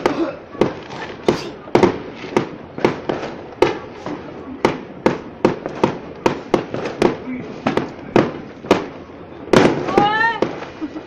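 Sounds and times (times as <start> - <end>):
fireworks banging: 0.0 - 11.0
fireworks crackling: 0.0 - 11.0.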